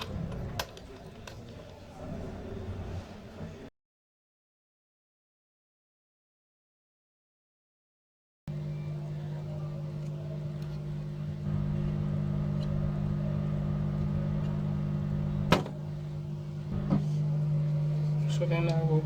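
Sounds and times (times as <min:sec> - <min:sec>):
electrical hum: 0:08.5 - 0:19.0.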